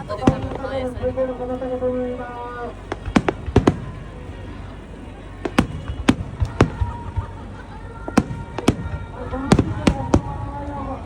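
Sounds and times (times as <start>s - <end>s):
fireworks bursting with sharp bangs: 0.0s - 1.5s, 2.7s - 11.0s.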